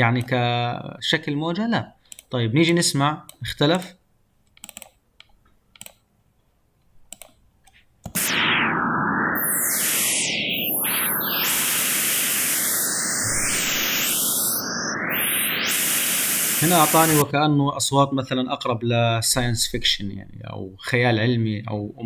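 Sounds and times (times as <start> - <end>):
sweeping filtered noise hiss: 8.2 - 17.3.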